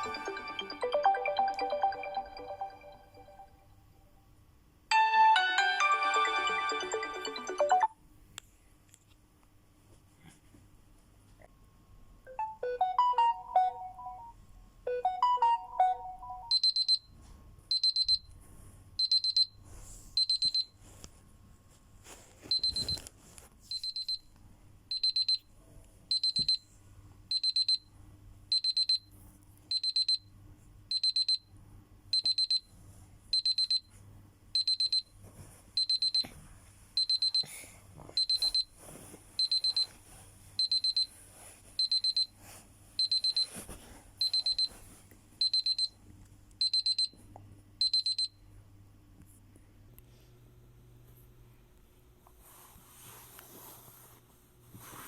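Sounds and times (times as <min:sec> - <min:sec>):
melodic phone tone: 0:00.0 - 0:03.7, 0:04.9 - 0:07.9, 0:12.3 - 0:16.9
smartphone alarm beeping: 0:12.3 - 0:17.1, 0:17.7 - 0:18.3, 0:19.0 - 0:19.5, 0:20.2 - 0:20.7, 0:22.5 - 0:23.0, 0:23.7 - 0:24.2, 0:24.9 - 0:25.4, 0:26.1 - 0:26.6, 0:27.3 - 0:27.8, 0:28.5 - 0:29.0, 0:29.7 - 0:30.2, 0:30.9 - 0:31.4, 0:32.2 - 0:32.6, 0:33.4 - 0:33.9, 0:34.6 - 0:35.0, 0:35.8 - 0:36.2, 0:37.0 - 0:37.4, 0:38.2 - 0:38.7, 0:39.4 - 0:39.9, 0:40.6 - 0:41.1, 0:41.8 - 0:42.3, 0:43.0 - 0:43.5, 0:44.2 - 0:44.7, 0:45.4 - 0:46.0, 0:46.6 - 0:47.1, 0:47.8 - 0:48.4.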